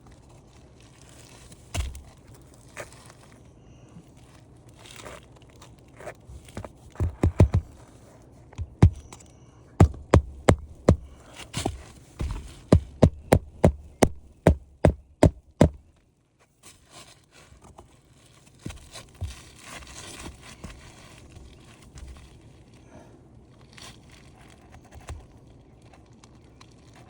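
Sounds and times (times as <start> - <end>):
scraping and rustling on shingles: 0.0 - 9.2, 9.8 - 15.8, 16.5 - 22.8
hammer blows on a roof: 7.0 - 7.8, 8.6 - 9.2, 9.8 - 15.8.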